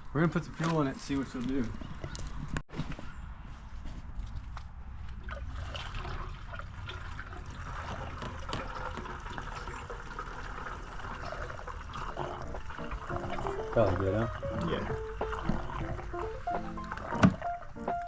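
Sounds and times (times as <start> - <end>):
fuel pouring into tank: 5.2 - 17.6.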